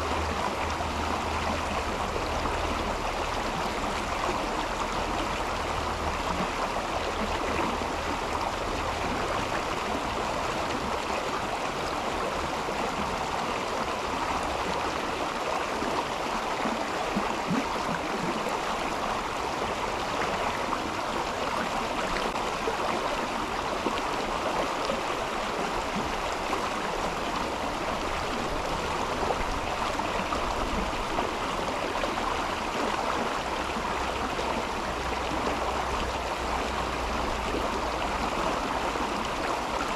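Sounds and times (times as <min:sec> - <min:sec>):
river water rushing over stones: 0:00.0 - 0:39.9.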